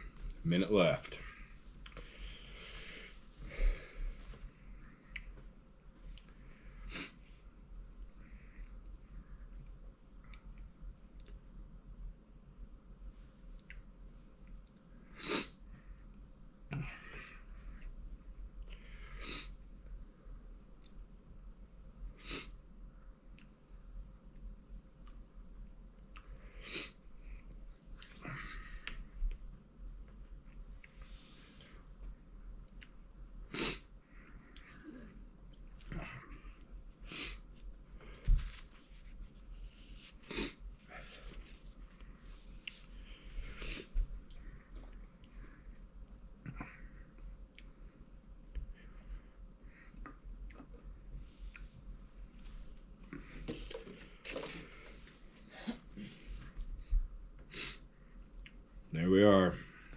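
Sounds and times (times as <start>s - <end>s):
man breathing hard: 1.4s - 4.5s
lip smacks and mouth clicks: 13.6s - 13.8s.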